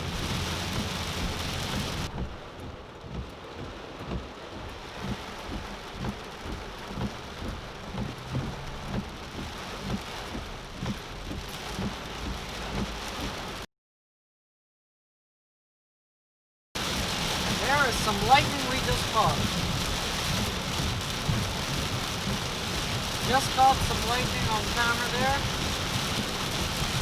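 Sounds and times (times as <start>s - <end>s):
heavy rain drumming on car: 0.0s - 13.7s, 16.8s - 27.0s
low thump: 2.1s - 4.3s.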